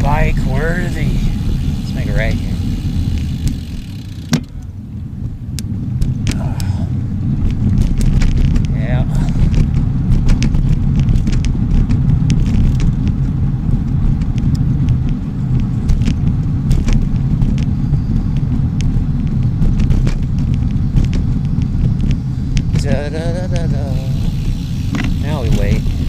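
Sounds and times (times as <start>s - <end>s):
bicycle clicks and rattles: 0.0s - 26.0s
wind and road noise rumble: 0.0s - 26.0s.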